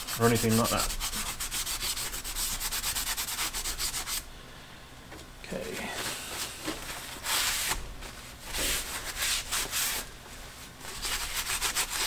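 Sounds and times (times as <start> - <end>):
wire brush scrubbing metal: 0.0 - 4.1.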